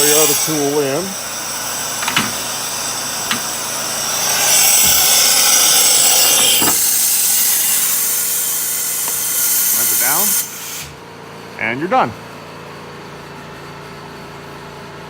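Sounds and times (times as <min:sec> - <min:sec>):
compressed air hissing: 0:00.0 - 0:11.0.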